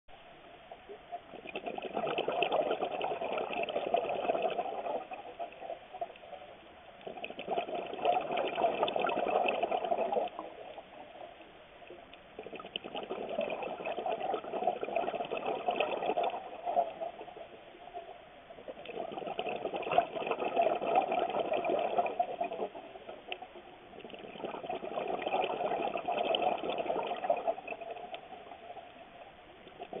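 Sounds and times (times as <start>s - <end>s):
diver exhaling bubbles underwater: 1.3s - 5.8s, 7.0s - 11.0s, 12.4s - 17.6s, 18.6s - 28.2s.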